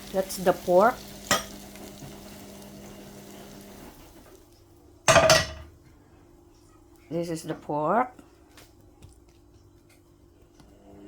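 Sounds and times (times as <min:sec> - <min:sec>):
faint sizzle: 0:00.0 - 0:05.0
loud metal clank: 0:05.1 - 0:05.7.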